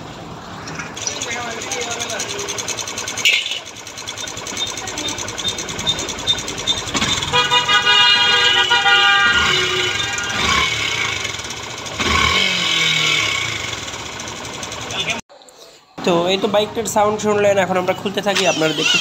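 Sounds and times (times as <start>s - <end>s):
motorcycle engine running: 0.3s - 15.2s
vehicle horn: 7.1s - 11.6s.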